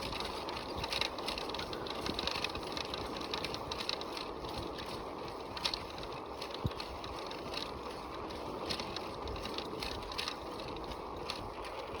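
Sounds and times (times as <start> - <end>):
bicycle tyres rumbling: 0.0 - 12.0
bike clicks and rattles: 0.0 - 12.0.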